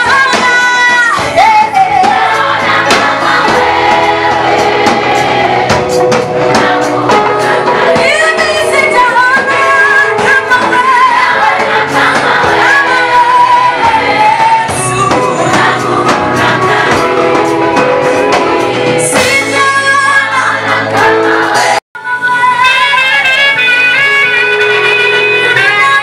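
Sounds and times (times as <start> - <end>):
musical backing: 0.0 - 26.0
choir singing: 1.5 - 21.8.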